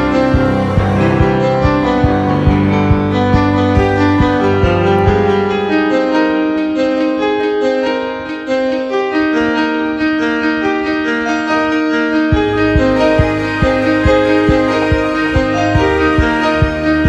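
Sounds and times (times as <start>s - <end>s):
low bass part: 0.0s - 5.6s, 12.4s - 17.0s
keyboard melody of held notes: 0.0s - 17.0s.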